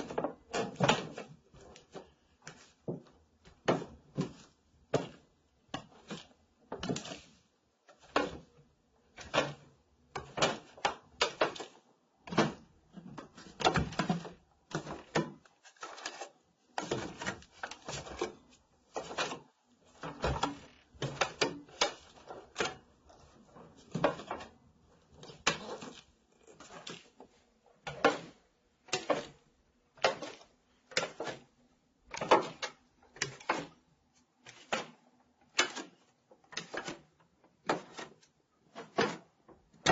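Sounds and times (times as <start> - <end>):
wooden stairs creaking: 20.0 - 21.2.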